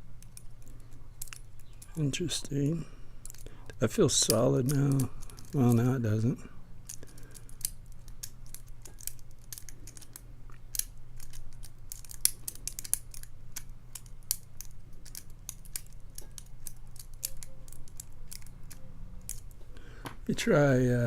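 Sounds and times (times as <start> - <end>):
steady low hum: 0.0 - 21.0
lock pick clicking in padlock: 6.9 - 19.6.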